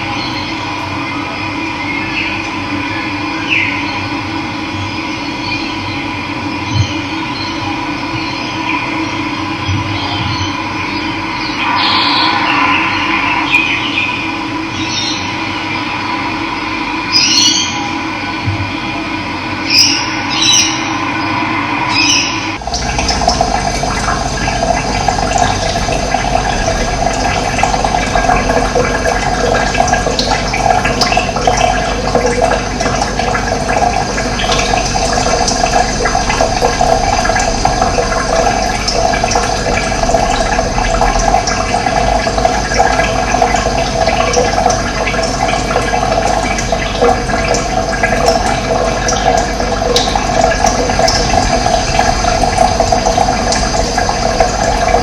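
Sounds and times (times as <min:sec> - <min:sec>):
running water rushing: 0:11.2 - 0:17.8, 0:19.7 - 0:55.0.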